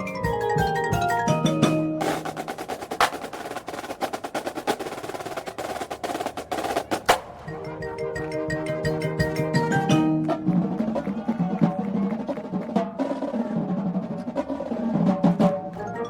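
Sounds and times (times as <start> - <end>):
mallet keyboard notes: 0.0 - 3.0, 7.1 - 11.2, 15.7 - 16.0
drumline playing: 0.0 - 16.0.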